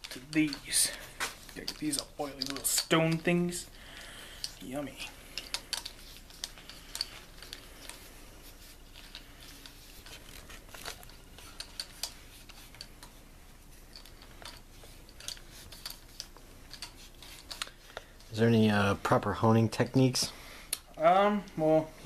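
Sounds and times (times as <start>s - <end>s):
light clicks of hone stones: 0.0s - 13.2s
soft rubbing by hand: 4.6s - 20.5s.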